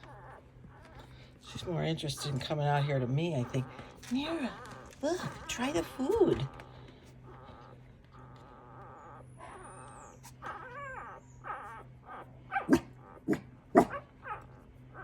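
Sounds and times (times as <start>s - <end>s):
puppy whining: 0.0s - 15.0s
puppy yipping: 4.5s - 15.0s.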